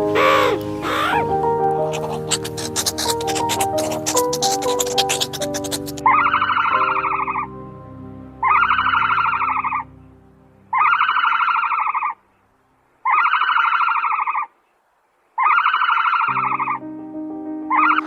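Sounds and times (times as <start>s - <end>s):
soft music: 0.0s - 12.8s, 16.3s - 18.0s
animal trilling calls: 0.1s - 7.5s, 10.7s - 12.2s, 13.1s - 14.5s.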